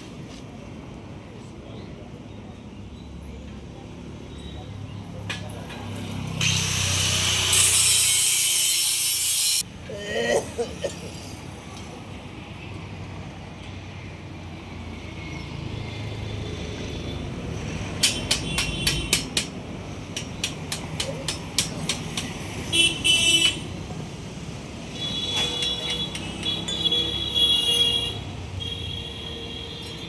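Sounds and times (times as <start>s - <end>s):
road traffic rumble: 0.0s - 30.0s
sharp taps: 18.0s - 22.4s
vehicle horn toots: 22.7s - 23.7s.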